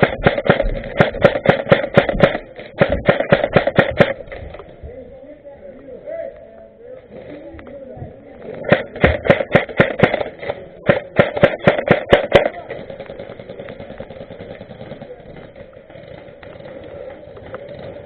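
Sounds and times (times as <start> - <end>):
airsoft gun firing: 0.0 - 4.4, 8.6 - 15.7.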